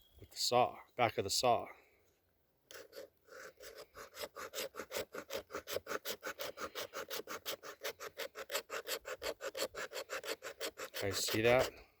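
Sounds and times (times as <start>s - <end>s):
saw blade spine scraping wood: 2.7s - 11.8s.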